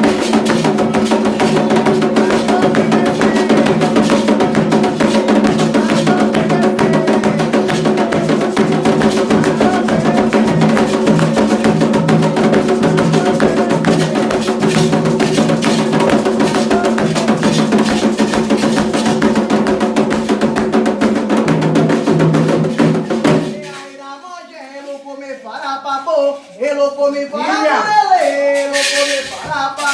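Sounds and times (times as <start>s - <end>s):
hand drums playing fast rhythm: 0.0s - 23.8s.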